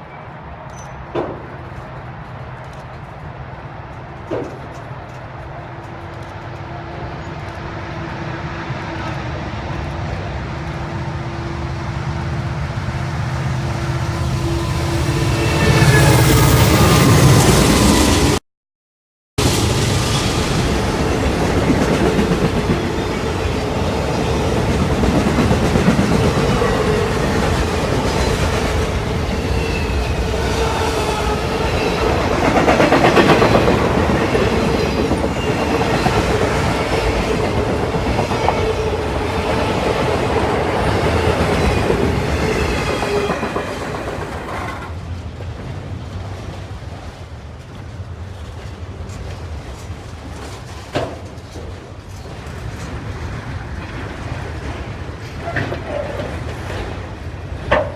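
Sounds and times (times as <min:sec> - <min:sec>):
train wheels clacking on rails: 0:19.9 - 0:46.6, 0:47.6 - 0:57.9.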